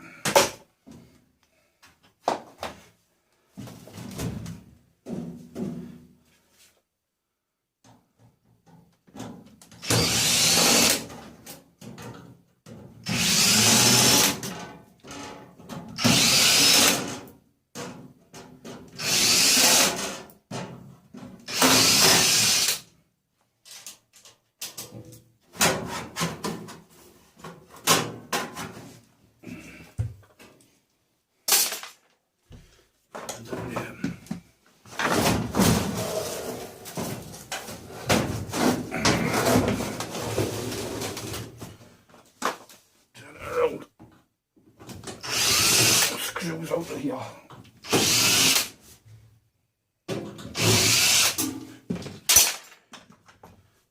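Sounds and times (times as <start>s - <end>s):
power drill running: 9.8s - 11.0s, 13.0s - 14.4s, 16.0s - 17.0s, 19.0s - 19.9s, 21.5s - 22.8s, 45.2s - 46.2s, 47.8s - 48.7s, 50.6s - 51.4s
parts clattering and knocking: 11.0s - 13.0s, 20.0s - 22.2s, 23.6s - 29.1s, 31.5s - 32.2s, 33.1s - 42.8s, 50.1s - 53.7s.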